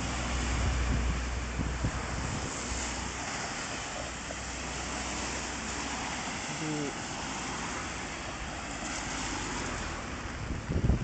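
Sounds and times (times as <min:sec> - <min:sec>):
wind buffeting microphone: 0:00.0 - 0:03.6, 0:10.0 - 0:11.0
heavy surf: 0:00.0 - 0:11.0.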